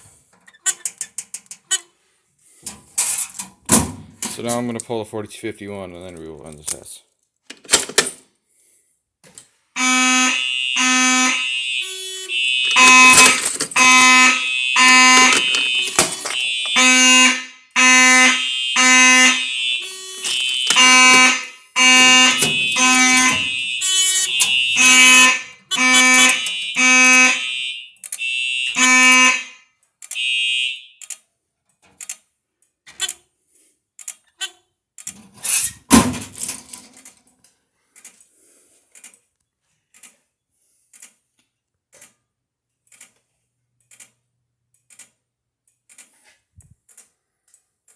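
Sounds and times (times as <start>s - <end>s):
pulsed fire alarm horns: 9.8s - 31.1s
clicks: 12.4s - 16.8s, 20.2s - 21.3s.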